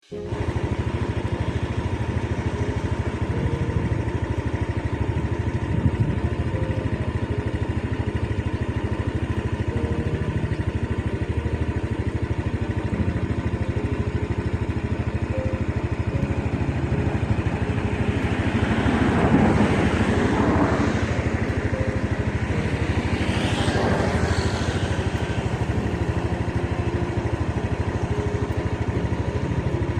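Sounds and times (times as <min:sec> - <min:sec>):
motorcycle engine running: 0:00.0 - 0:29.9
rush of noise: 0:16.4 - 0:27.9.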